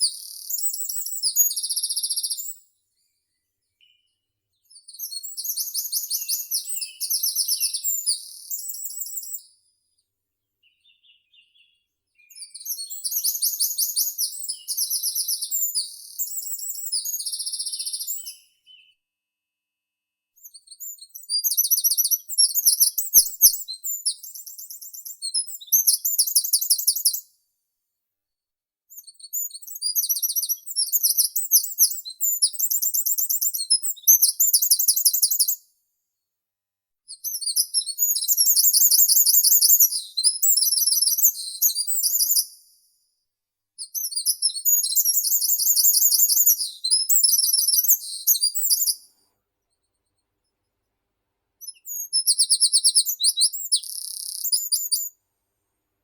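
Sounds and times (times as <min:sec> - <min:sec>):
songbird singing rapid notes: 0:10.6 - 0:19.0, 0:51.6 - 0:55.1.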